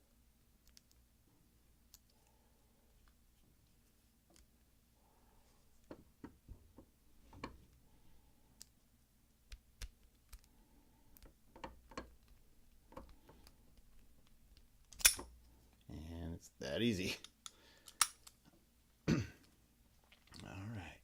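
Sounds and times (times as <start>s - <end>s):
metallic lock picking clicks: 14.9s - 15.3s, 17.2s - 18.4s.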